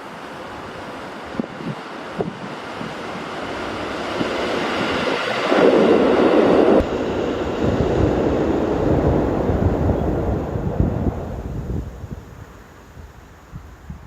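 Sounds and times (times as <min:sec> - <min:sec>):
train running past: 0:00.0 - 0:13.4
low rumble: 0:04.3 - 0:12.6.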